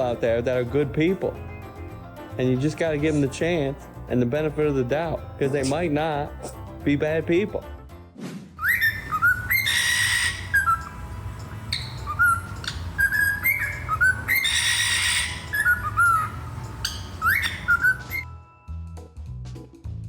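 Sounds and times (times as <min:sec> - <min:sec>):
parrot screeching: 0:08.6 - 0:18.2
parrot whistling and chirping: 0:08.6 - 0:18.3.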